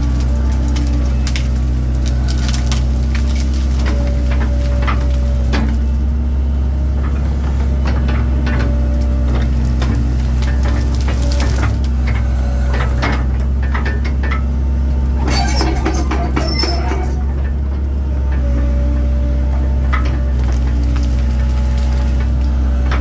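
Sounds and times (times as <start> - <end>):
branches cracking and breaking: 0.0 - 6.0, 9.0 - 12.3, 20.1 - 23.0
excavator diesel engine running: 0.0 - 23.0.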